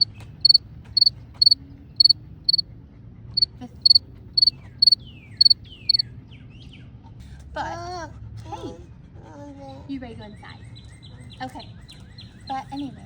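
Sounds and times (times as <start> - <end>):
cricket chirping: 0.0 - 2.6, 3.4 - 6.0.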